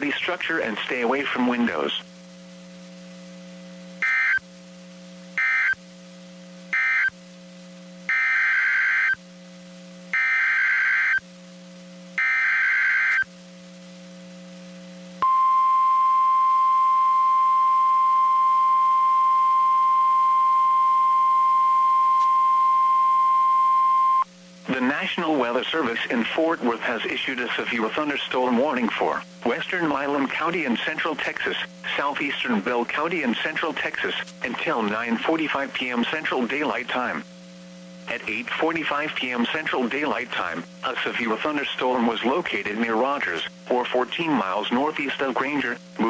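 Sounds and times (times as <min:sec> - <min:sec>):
low steady hum: 0:00.0 - 0:46.0
buzzy digital data bursts: 0:04.0 - 0:04.4, 0:05.4 - 0:05.8, 0:06.7 - 0:07.1, 0:08.1 - 0:09.2, 0:10.1 - 0:11.2, 0:12.2 - 0:13.3
steady warning alarm tone: 0:04.0 - 0:04.4, 0:05.4 - 0:05.8, 0:06.7 - 0:07.2, 0:08.1 - 0:09.2, 0:10.1 - 0:11.2, 0:12.2 - 0:13.3.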